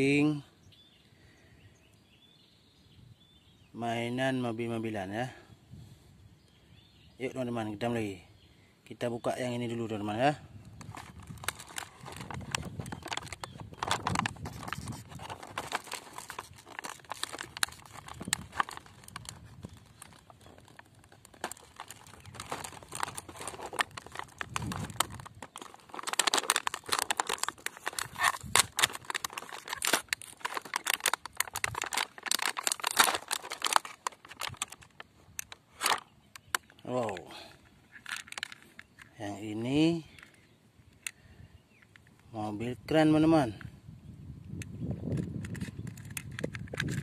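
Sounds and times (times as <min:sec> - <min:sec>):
packaging crinkling and tearing: 0:10.8 - 0:37.2, 0:37.9 - 0:39.1, 0:45.1 - 0:47.0.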